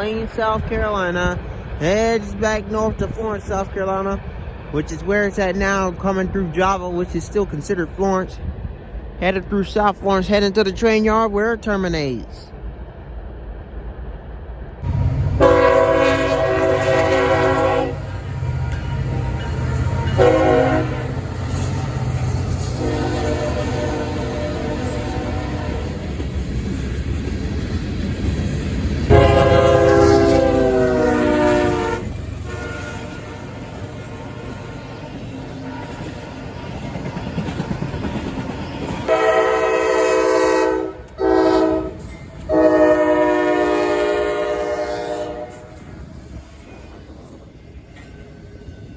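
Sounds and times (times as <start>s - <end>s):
freight locomotive rumbling: 0.0s - 48.9s
locomotive air horn blasts: 15.4s - 21.2s, 22.8s - 26.0s, 29.1s - 34.6s, 39.1s - 45.7s.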